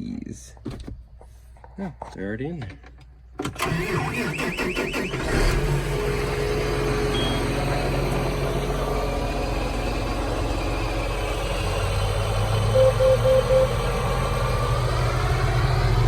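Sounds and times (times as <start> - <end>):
engine starter cranking: 3.4 - 5.8
engine idling: 5.6 - 16.0.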